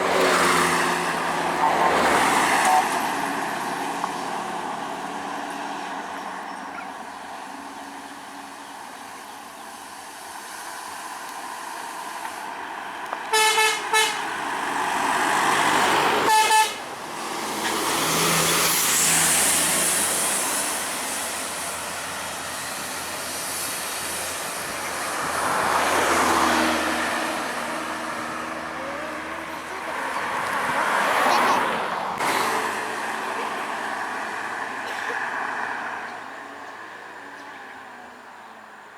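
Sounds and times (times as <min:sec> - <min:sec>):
heavy vehicles passing: 0:00.0 - 0:38.9
melodic bus horn toots: 0:13.3 - 0:14.4, 0:16.2 - 0:16.9.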